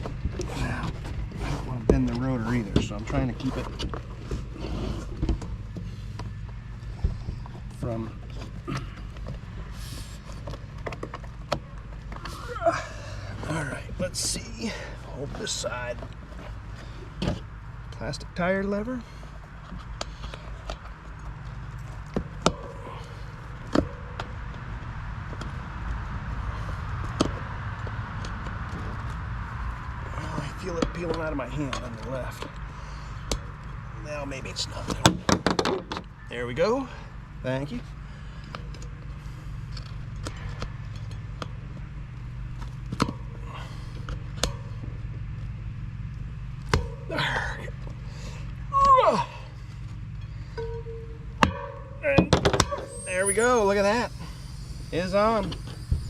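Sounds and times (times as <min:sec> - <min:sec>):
steady low hum: 0:00.0 - 0:56.0
short squeak: 0:52.6 - 0:56.0.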